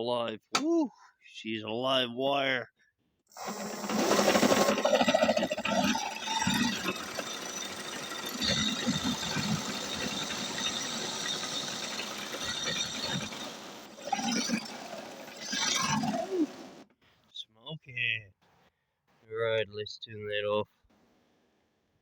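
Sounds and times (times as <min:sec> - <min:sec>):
electric motor whirring: 0:03.3 - 0:16.8.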